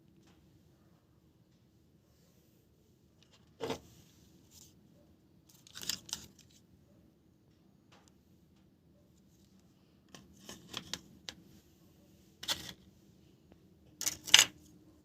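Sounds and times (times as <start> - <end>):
rustles of small parts handled: 5.4 - 6.6, 9.3 - 11.5, 12.4 - 12.9, 14.0 - 14.6.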